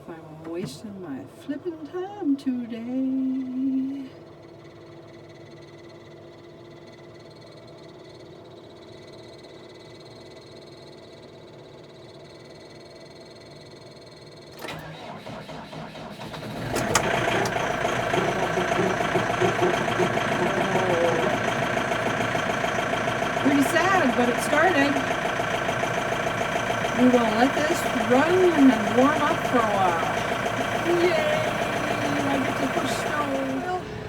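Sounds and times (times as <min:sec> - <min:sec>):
faint steady hum: 0:00.0 - 0:11.2
tractor engine cranking and starting: 0:14.6 - 0:34.0.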